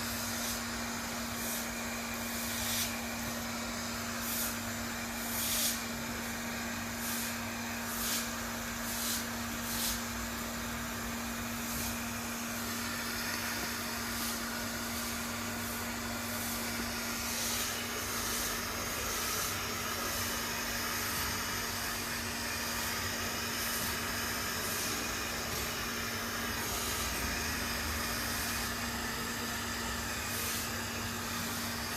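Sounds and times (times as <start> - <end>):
hair dryer blowing: 9.8 - 31.9.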